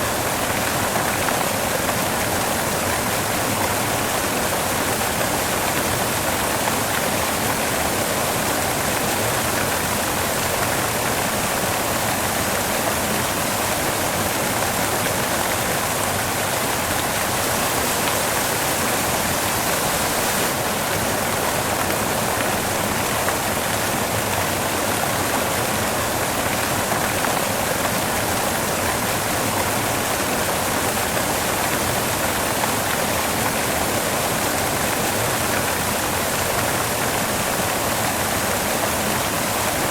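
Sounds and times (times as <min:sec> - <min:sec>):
white noise hiss: 0:00.0 - 0:25.2.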